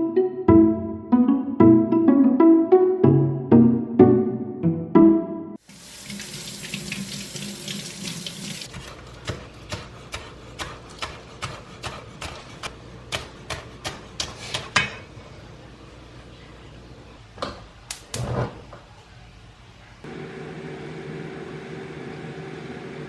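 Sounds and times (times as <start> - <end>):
kitchen tap running: 5.6 - 9.2.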